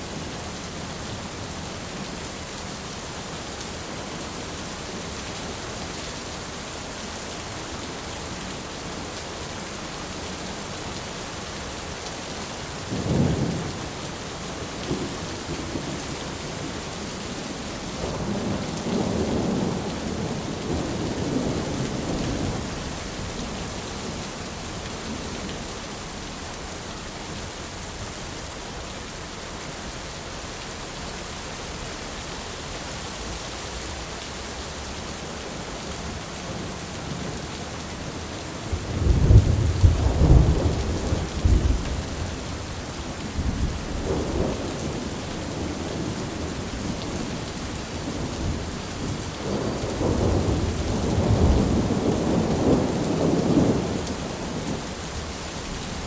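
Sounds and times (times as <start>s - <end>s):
steady rain: 0.0s - 56.0s
rolling thunder: 38.7s - 42.5s, 48.1s - 54.8s.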